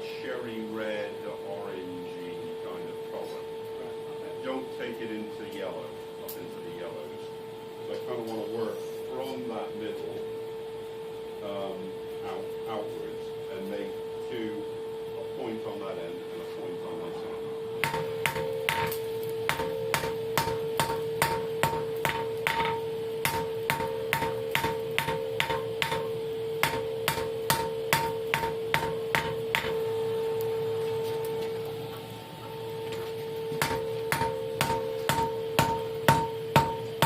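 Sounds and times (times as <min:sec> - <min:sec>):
steady hum: 0:00.0 - 0:37.0
hammer striking steel on anvil: 0:17.8 - 0:29.9, 0:33.6 - 0:37.0.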